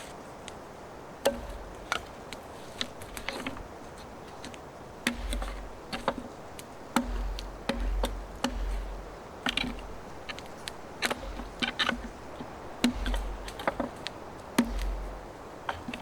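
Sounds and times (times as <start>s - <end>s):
wooden knocks and cracks: 1.2s - 16.0s
dull low thump: 1.3s - 2.3s, 5.1s - 6.4s, 7.0s - 16.0s.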